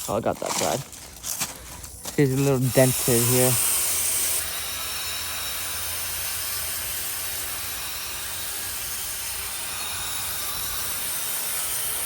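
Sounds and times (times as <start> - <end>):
water spraying from hose: 2.2 - 12.0.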